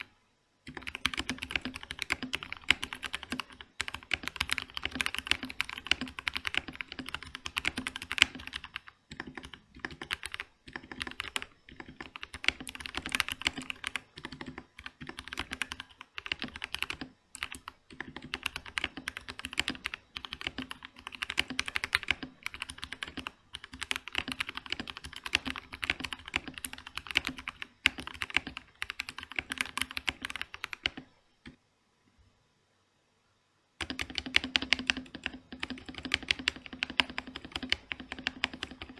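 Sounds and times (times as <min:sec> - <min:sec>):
mechanical keyboard typing: 0:00.0 - 0:31.1, 0:33.8 - 0:38.9.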